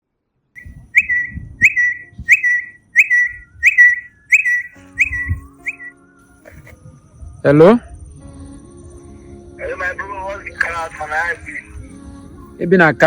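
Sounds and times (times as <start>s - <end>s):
high whistle-like note: 0.6s - 6.0s.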